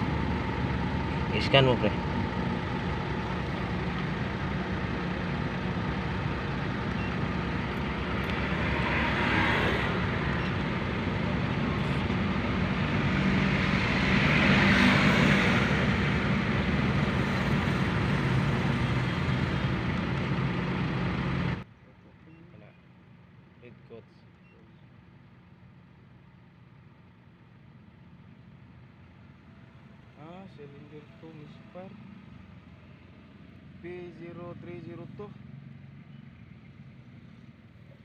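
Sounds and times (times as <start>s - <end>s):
car engine running: 0.0s - 14.4s.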